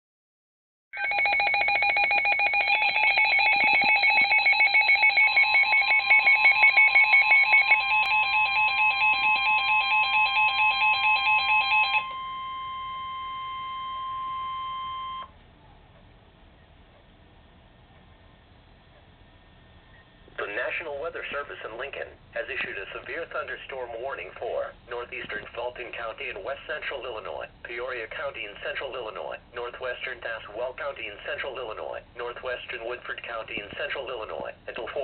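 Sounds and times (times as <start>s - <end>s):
rapid trilling electronic alarm: 1.0s - 15.3s
steady warning beep: 1.0s - 15.3s.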